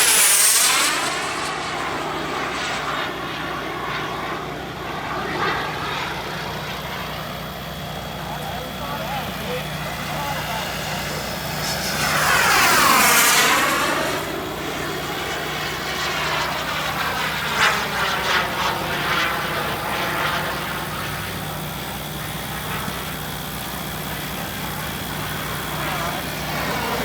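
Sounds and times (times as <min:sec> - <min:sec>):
model jet turbine whine: 0:00.0 - 0:27.0.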